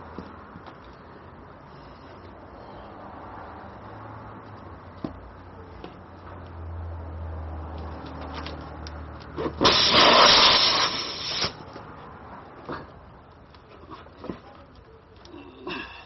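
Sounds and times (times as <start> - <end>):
loud hiss: 9.5 - 11.6.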